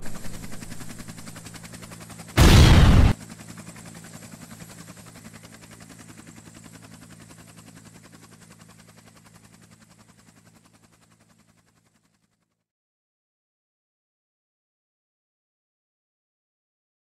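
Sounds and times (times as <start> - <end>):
rapidly pulsing machine hum: 0.0 - 9.6.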